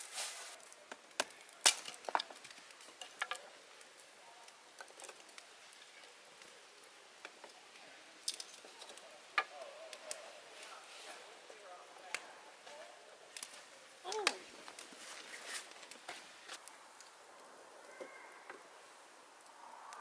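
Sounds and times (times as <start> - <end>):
small objects clicking and knocking: 0.6 - 7.6.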